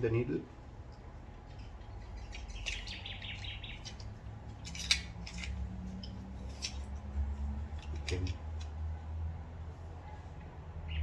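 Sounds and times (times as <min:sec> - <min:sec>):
small metal parts clicking: 0:00.9 - 0:08.8.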